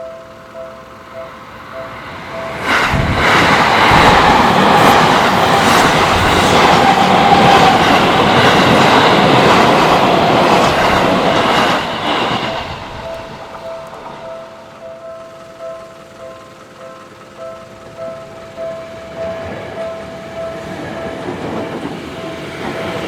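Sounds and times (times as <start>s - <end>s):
electric train passing: 0.0s - 23.0s
level crossing warning bell: 0.0s - 23.0s
train wheels clattering over rail joints: 2.0s - 14.5s, 18.1s - 23.0s.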